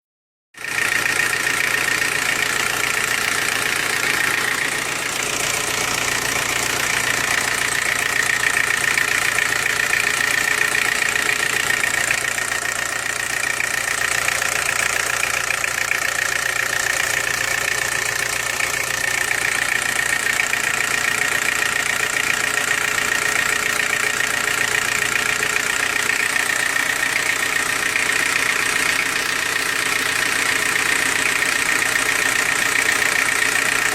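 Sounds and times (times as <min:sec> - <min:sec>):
car engine idling: 0:00.6 - 0:33.9.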